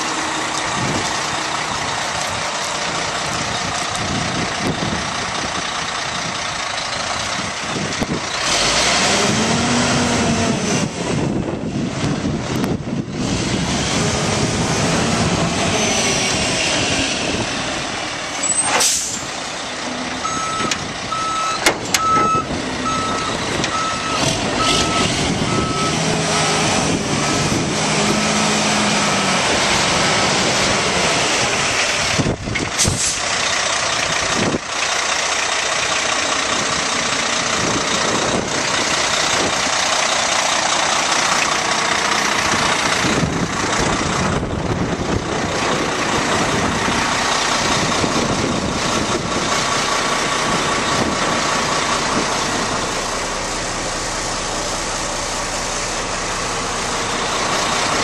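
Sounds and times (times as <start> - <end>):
diesel truck engine running: 0.0 - 58.0.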